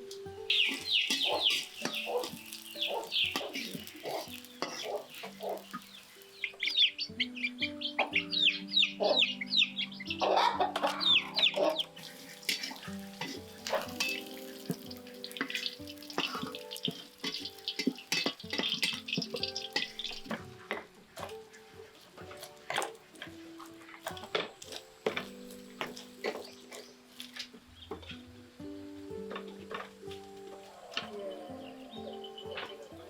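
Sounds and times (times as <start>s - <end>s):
soft background music: 0.0s - 33.0s
birds chirping: 0.2s - 33.0s.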